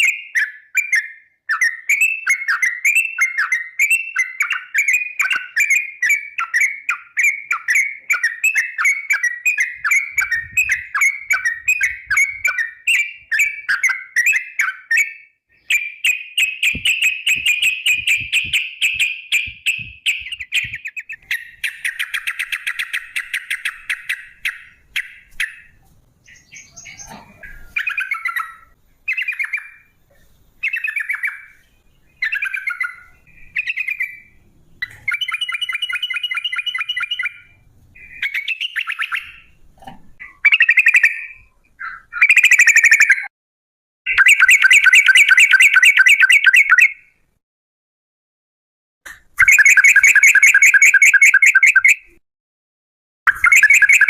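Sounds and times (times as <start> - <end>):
bulbul singing with rattling trills: 0.0 - 39.6, 53.3 - 54.0.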